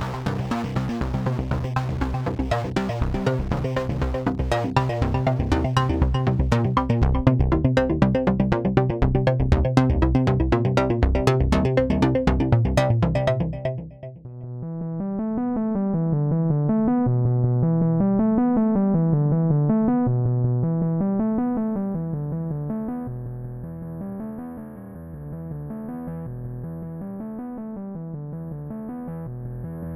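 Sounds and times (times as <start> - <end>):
dense clicking rhythmic pattern: 0.0 - 14.2
low synth bass: 0.0 - 15.0
synth line of repeating notes: 0.5 - 14.2.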